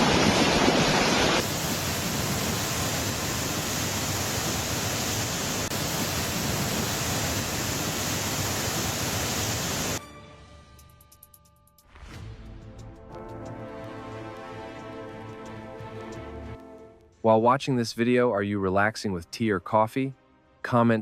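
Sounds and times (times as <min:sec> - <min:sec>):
river current rushing: 0:00.0 - 0:10.0.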